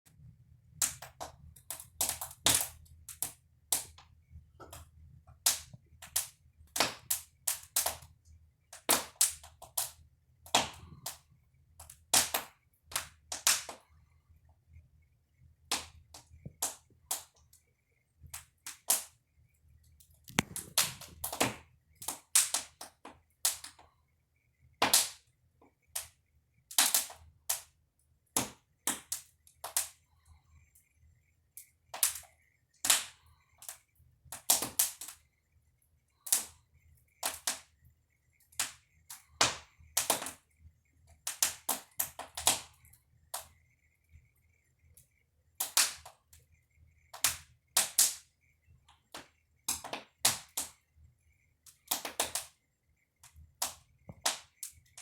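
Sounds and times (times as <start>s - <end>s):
wood fire crackling: 19.8s - 23.8s
sharp pops: 20.2s - 23.8s.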